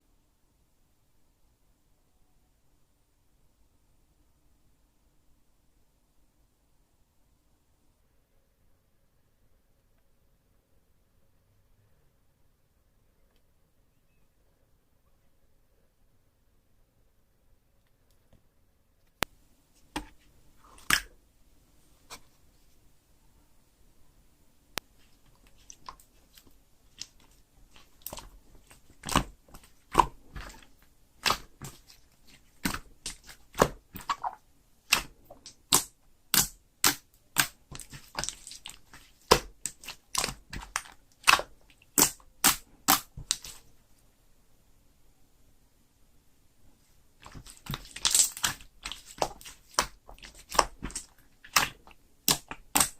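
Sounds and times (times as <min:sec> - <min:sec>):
slime popping and clicking: 0:32.6 - 0:43.6, 0:47.2 - 0:52.9.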